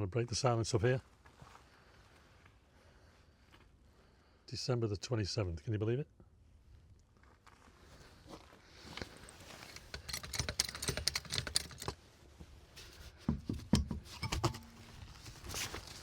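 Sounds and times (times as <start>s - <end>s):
hand tools clicking and clinking: 9.5s - 12.0s, 13.6s - 15.0s.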